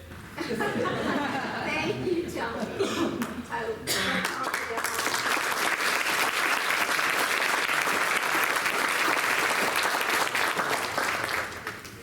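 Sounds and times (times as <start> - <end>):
audience applauding: 4.2 - 12.0.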